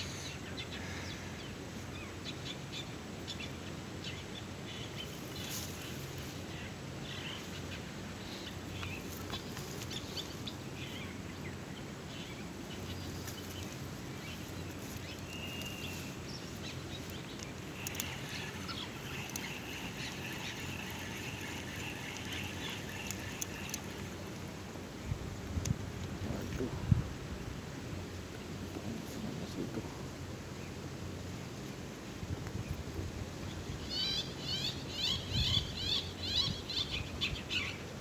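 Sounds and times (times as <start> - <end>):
birds chirping: 0.0 - 24.6
background hiss: 0.0 - 38.0.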